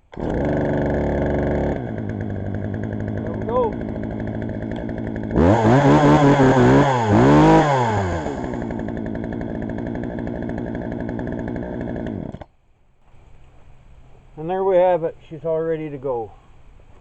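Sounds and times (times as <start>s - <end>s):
chainsaw idling and revving: 0.0s - 12.5s.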